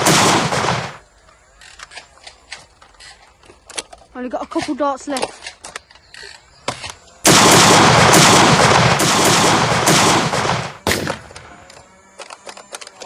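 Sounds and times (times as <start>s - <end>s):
rapid automatic gunfire: 0.0s - 1.0s, 7.2s - 11.6s
single gunshot: 0.0s - 1.0s, 7.2s - 11.6s.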